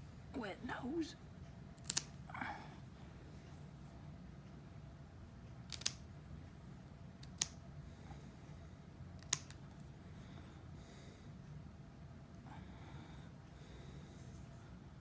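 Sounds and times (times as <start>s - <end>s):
nail clippers clicking: 1.8s - 2.2s, 5.7s - 6.0s, 7.2s - 7.6s, 9.2s - 9.6s.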